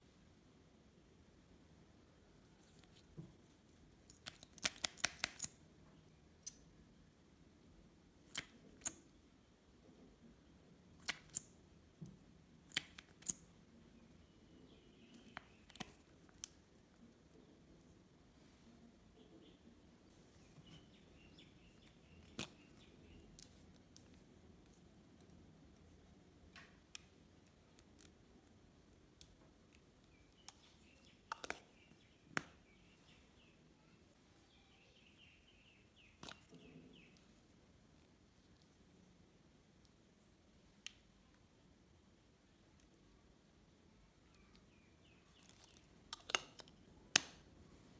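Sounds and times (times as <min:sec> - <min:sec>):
faint bird chirping: 0:12.9 - 0:24.4, 0:29.6 - 0:41.6, 0:42.2 - 0:47.9.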